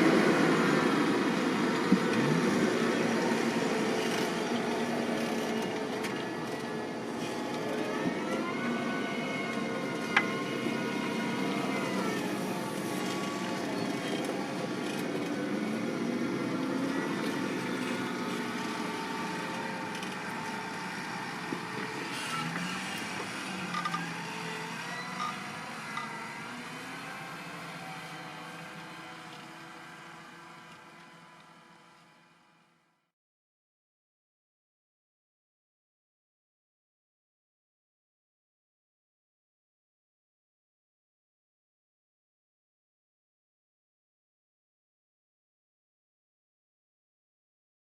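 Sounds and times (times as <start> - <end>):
tractor diesel engine under load: 0.0 - 32.1.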